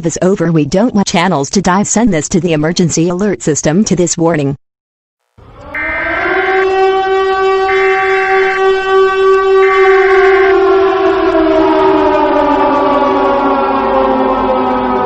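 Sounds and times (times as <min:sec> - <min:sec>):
warning siren wailing: 0:05.4 - 0:15.0.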